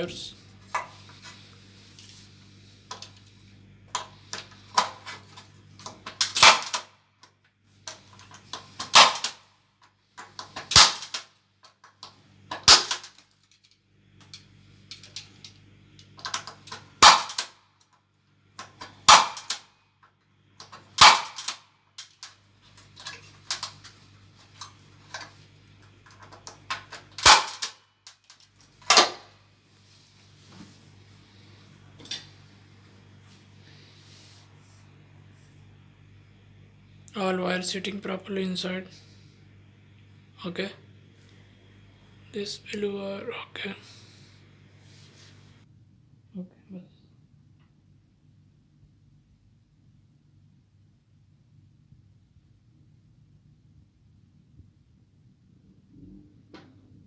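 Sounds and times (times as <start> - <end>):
punch-down tool snapping: 8.8 - 9.4, 10.6 - 11.2, 21.0 - 21.6, 27.2 - 27.8.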